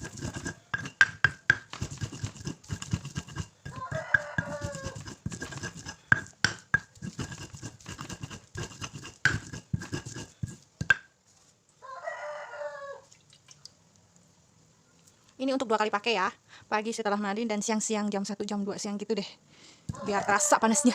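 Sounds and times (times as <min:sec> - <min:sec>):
pestle grinding in a mortar: 0:00.0 - 0:11.1, 0:19.9 - 0:20.4
rooster crowing: 0:03.7 - 0:05.1, 0:11.8 - 0:13.1, 0:19.9 - 0:20.9.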